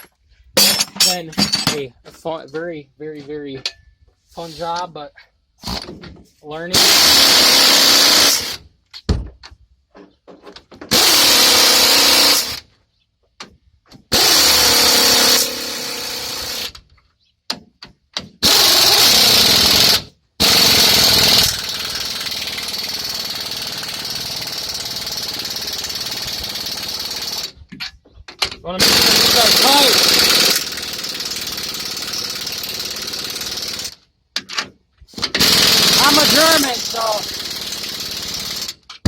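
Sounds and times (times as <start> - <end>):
impact wrench hammering on nuts: 28.8 - 33.9, 35.2 - 39.0.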